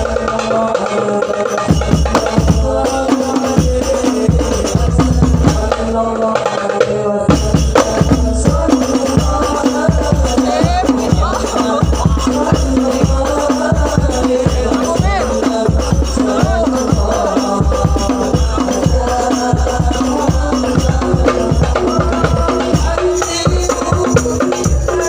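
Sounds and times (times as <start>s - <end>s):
hand drums and percussion: 0.0s - 25.0s.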